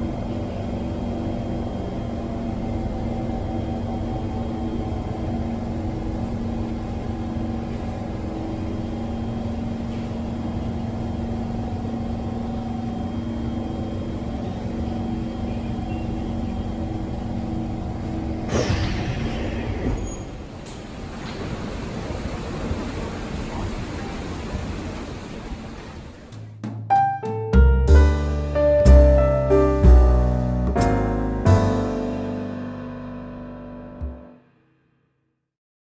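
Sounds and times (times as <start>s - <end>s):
electric train whine: 0.0s - 26.2s
train rolling noise: 0.0s - 26.8s
burst with falling tones: 18.5s - 21.1s.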